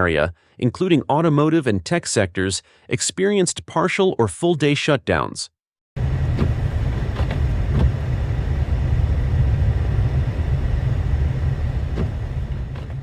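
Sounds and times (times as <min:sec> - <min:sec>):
low rumbling noise: 0:06.0 - 0:13.0.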